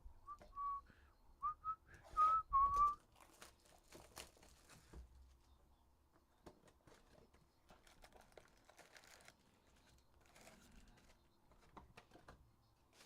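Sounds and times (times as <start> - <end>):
plastic wrapping crinkling: 2.7 - 5.5, 6.4 - 13.0.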